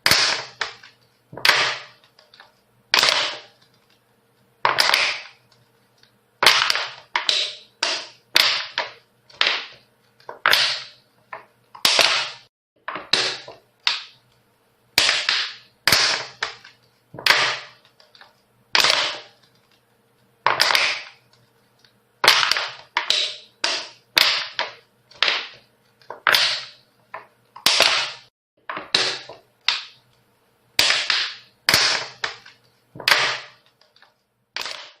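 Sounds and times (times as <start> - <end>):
hockey stick striking puck: 0.0 - 2.0, 3.0 - 3.6, 4.7 - 5.4, 6.4 - 14.1, 15.0 - 17.8, 18.8 - 19.3, 20.5 - 21.2, 22.2 - 25.6, 26.2 - 26.8, 27.6 - 30.0, 30.8 - 33.7, 34.6 - 35.0.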